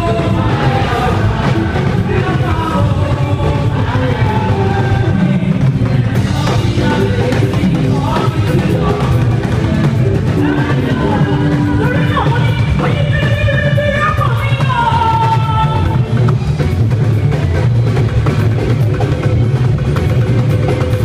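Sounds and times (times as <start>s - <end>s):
person singing: 0.0s - 16.2s
drum kit: 0.0s - 21.0s.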